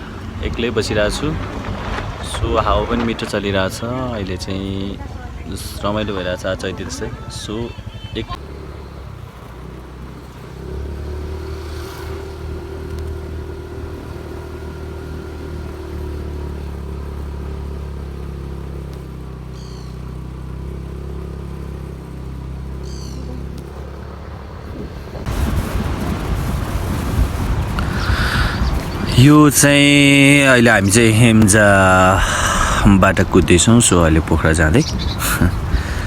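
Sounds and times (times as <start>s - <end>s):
engine humming: 0.0s - 36.0s
wind rushing over microphone: 24.5s - 36.0s.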